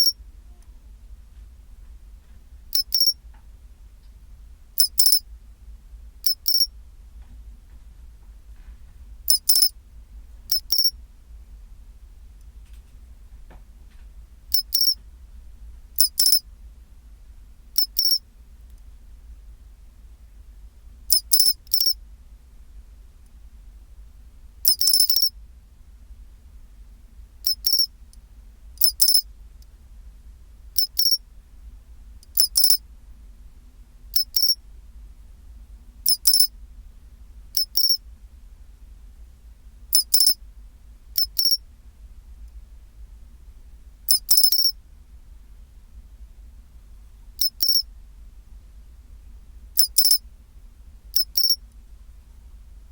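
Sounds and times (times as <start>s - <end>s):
low steady hum: 0.0s - 52.9s
cricket singing: 2.7s - 3.2s, 4.8s - 5.2s, 6.2s - 6.7s, 9.3s - 9.7s, 10.5s - 10.9s, 14.5s - 15.0s, 16.0s - 16.4s, 17.8s - 18.2s, 21.1s - 22.0s, 24.6s - 25.3s, 27.4s - 27.9s, 28.8s - 29.2s, 30.8s - 31.2s, 32.3s - 32.8s, 34.1s - 34.6s, 36.0s - 36.5s, 37.6s - 38.0s, 39.9s - 40.4s, 41.2s - 41.6s, 44.1s - 44.7s, 47.4s - 47.8s, 49.8s - 50.2s, 51.1s - 51.6s.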